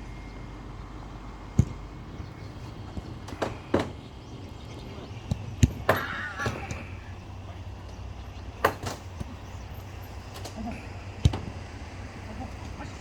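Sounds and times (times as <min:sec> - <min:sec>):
outdoor background noise: 0:00.0 - 0:13.0
football being kicked: 0:01.5 - 0:03.6, 0:04.8 - 0:07.2, 0:11.2 - 0:11.6.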